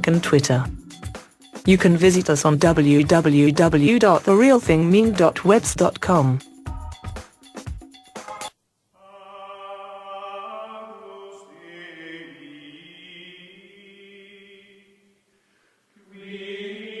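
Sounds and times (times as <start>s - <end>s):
layered chant-like drone: 9.0s - 15.0s, 16.1s - 17.0s.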